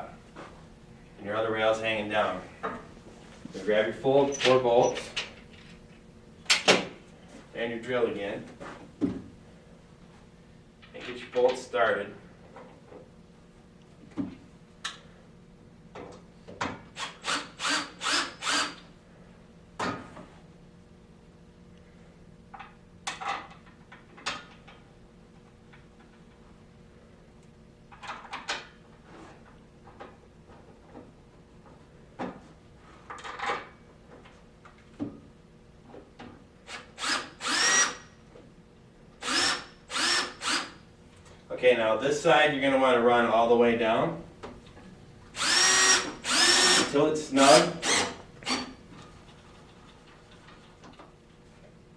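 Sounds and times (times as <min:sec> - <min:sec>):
power drill whining: 0:17.0 - 0:18.8, 0:36.7 - 0:38.0, 0:39.2 - 0:40.8, 0:45.4 - 0:48.8.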